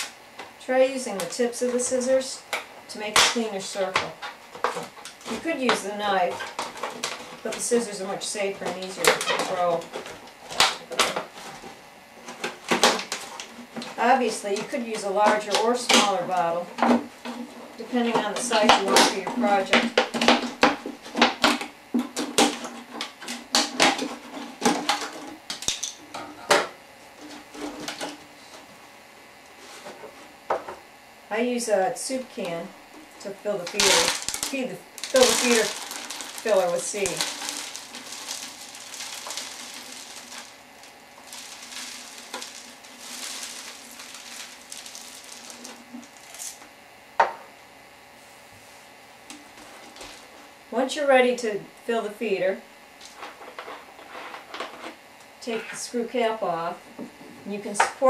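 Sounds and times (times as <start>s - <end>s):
plastic crackling: 32.9s - 46.7s
birdseed pouring into plastic bottle: 33.8s - 46.3s.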